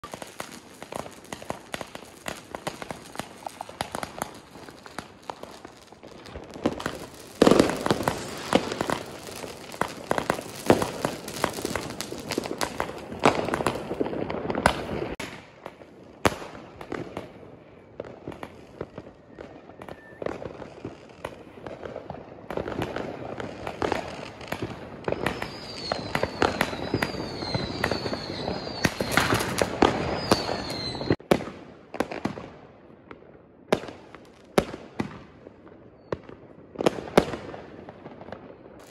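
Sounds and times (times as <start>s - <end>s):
falling firework whistles: 0.0s - 15.2s, 18.4s - 21.4s, 23.9s - 31.2s
fireworks bangs and crackling: 0.0s - 38.9s.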